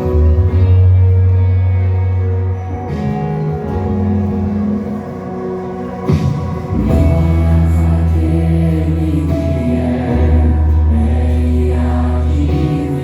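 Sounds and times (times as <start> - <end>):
long held bass notes: 0.0 - 13.0
voices singing together: 6.2 - 13.0.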